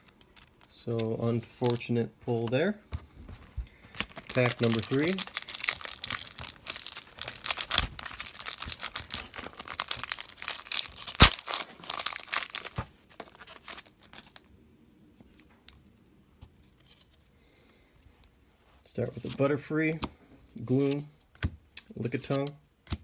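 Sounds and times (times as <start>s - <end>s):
wrapper tearing and crinkling: 0.0s - 1.9s, 4.0s - 14.5s.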